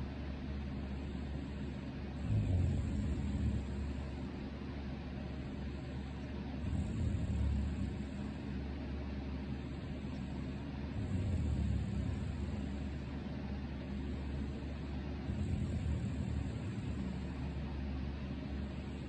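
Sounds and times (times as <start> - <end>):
electric fan humming: 0.0 - 19.0
person snoring: 2.2 - 4.0, 6.6 - 8.3, 10.9 - 12.9.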